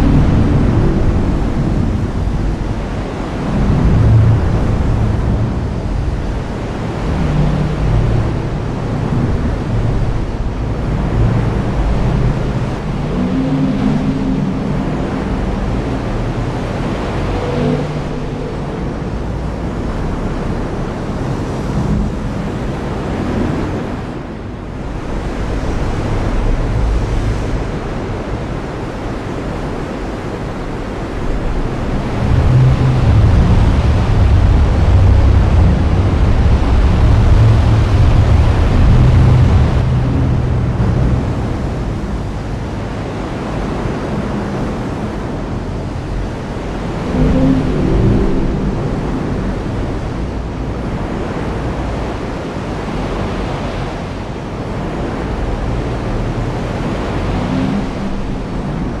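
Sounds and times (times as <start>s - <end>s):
low rolling thunder: 0.0s - 20.2s, 30.7s - 51.2s.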